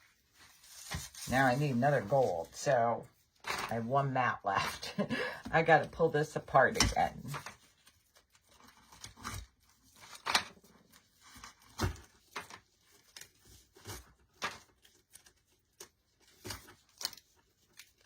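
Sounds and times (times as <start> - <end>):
plastic crinkling and rustling: 6.9 - 18.0.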